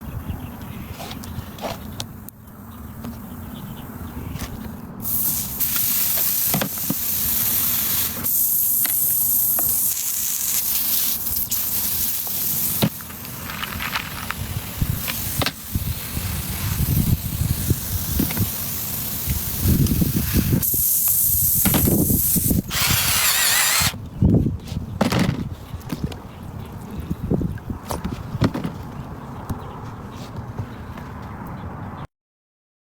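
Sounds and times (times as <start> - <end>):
air hissing: 5.0 - 24.0.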